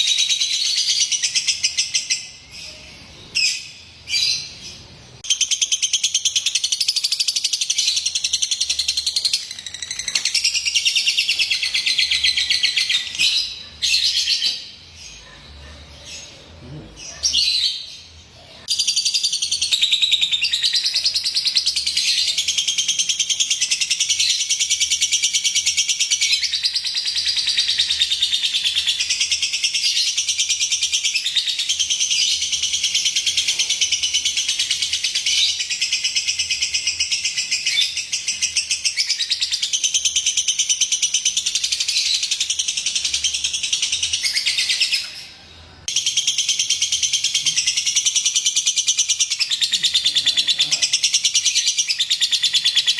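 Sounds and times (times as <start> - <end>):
bird chattering and trilling: 45.8 - 52.9.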